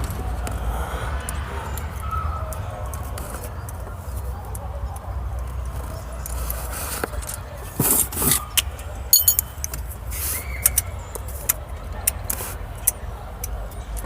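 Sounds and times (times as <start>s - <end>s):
steel bolts clinking: 9.1s - 9.7s
bright metallic ring: 9.2s - 9.6s.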